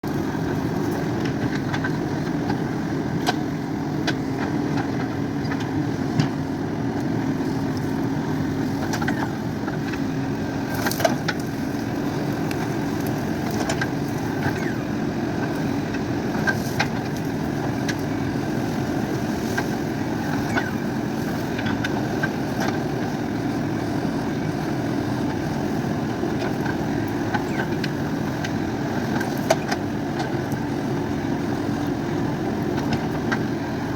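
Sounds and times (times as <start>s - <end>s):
diesel engine running: 0.0s - 33.9s.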